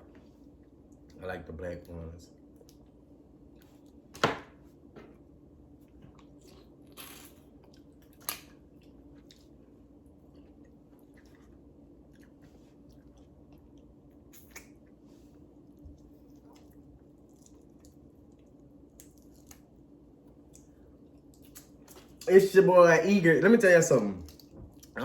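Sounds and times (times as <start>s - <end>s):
wet chewing: 15.6s - 19.7s.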